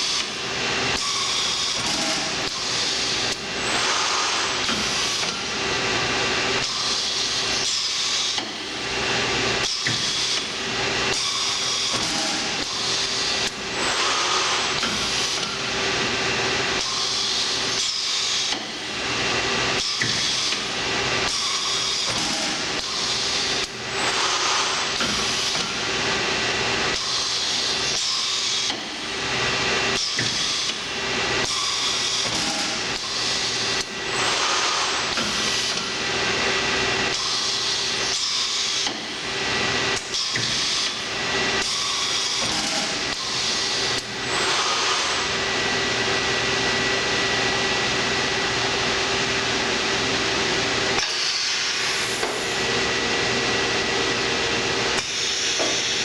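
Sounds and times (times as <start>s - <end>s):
machine hum: 41.0s - 56.0s.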